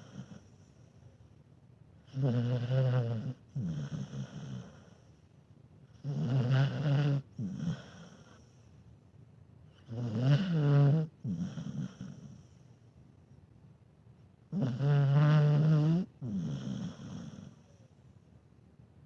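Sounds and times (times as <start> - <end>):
dog snoring: 0.0 - 0.9, 2.0 - 5.2, 5.9 - 8.6, 9.7 - 12.7, 14.5 - 17.9.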